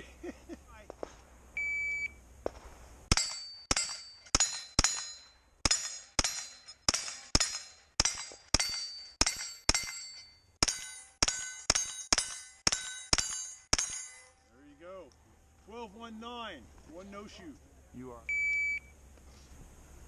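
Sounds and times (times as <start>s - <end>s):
shot timer beep: 1.6s - 2.2s, 18.3s - 18.9s
rifle shots: 2.4s - 10.0s
steel target plates ringing: 3.1s - 14.5s.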